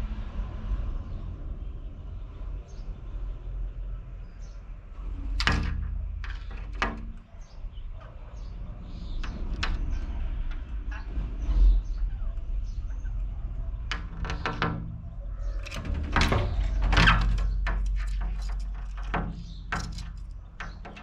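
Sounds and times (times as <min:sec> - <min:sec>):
steady low rumble: 0:05.0 - 0:21.0.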